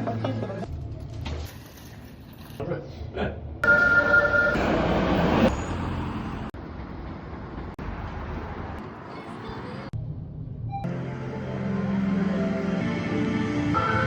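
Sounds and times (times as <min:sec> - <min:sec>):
road traffic rumble: 0:04.2 - 0:10.5.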